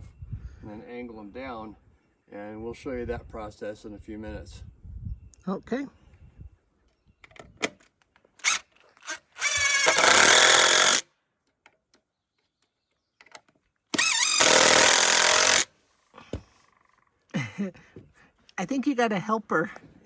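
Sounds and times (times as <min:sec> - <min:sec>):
power driver driving screws: 0:08.4 - 0:11.0, 0:13.9 - 0:15.7.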